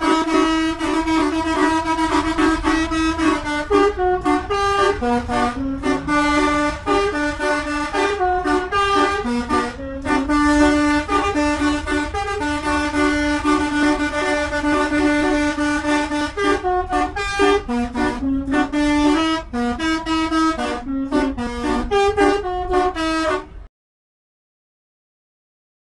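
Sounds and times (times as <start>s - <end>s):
multi-trumpet air horn melody: 0.0s - 23.7s.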